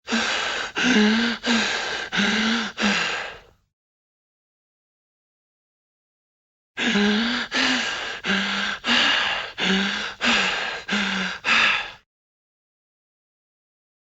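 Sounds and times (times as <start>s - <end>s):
breathy wheezing huffs: 0.0s - 3.6s, 6.8s - 12.0s.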